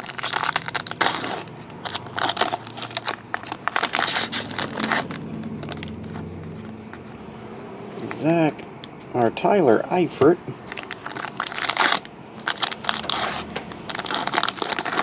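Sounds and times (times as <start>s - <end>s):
cards and foil wrappers crinkling: 0.0s - 6.7s, 10.6s - 15.0s.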